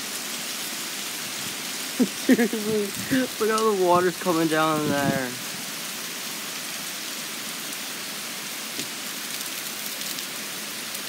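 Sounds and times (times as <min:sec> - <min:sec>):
heavy rain pouring: 0:00.0 - 0:11.0.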